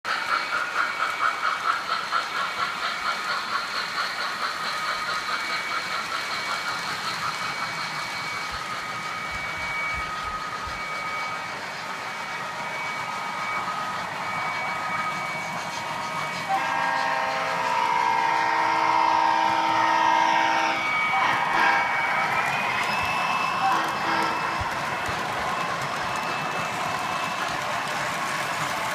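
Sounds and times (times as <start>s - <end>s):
model trains running: 0.0s - 28.9s
model train whistle chord: 12.8s - 25.2s.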